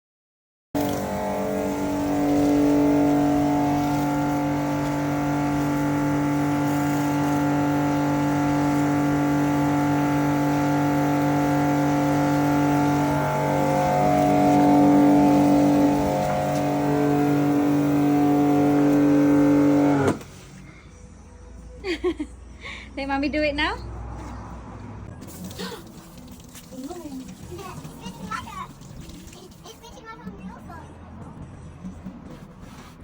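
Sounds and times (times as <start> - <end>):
pressure washer running: 0.8 - 20.5.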